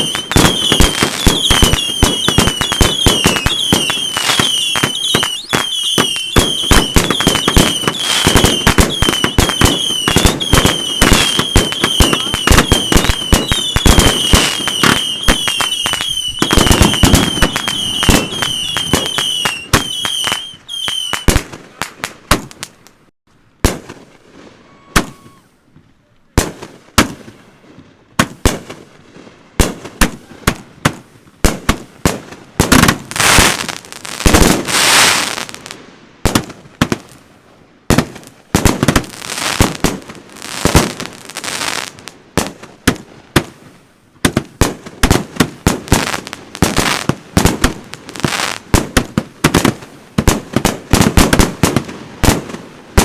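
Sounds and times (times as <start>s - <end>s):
firework aerial bangs: 0.0s - 22.8s, 37.9s - 53.0s
firework crackling: 0.0s - 25.5s, 28.2s - 37.3s, 37.9s - 53.0s.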